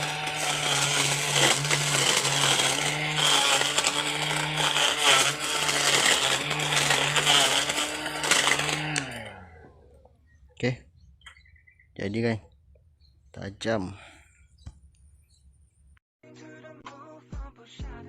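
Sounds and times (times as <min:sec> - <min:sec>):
blade rasping through grass: 0:00.0 - 0:09.6
grass cutter motor whine: 0:00.0 - 0:10.1.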